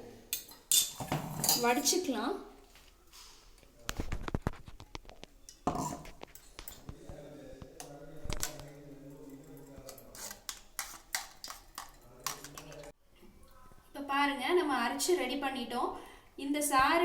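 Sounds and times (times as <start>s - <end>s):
paste scraping against a strainer: 9.2s - 12.8s.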